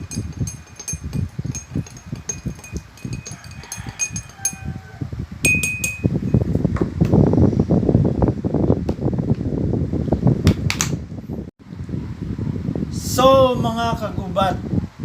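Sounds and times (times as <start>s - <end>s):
spoon clinking against a glass: 0.0s - 6.3s.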